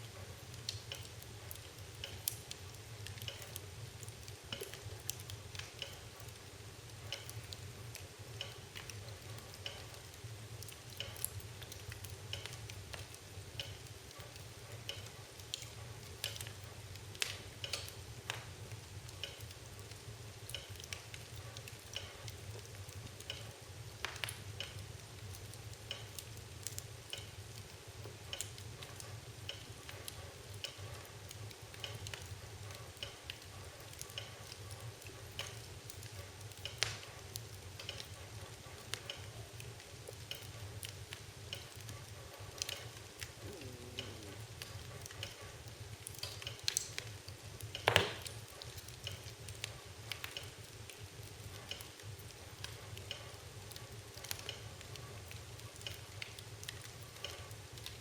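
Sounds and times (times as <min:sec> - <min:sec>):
fire crackling: 0:00.0 - 0:58.0
steady low hum: 0:43.0 - 0:45.5.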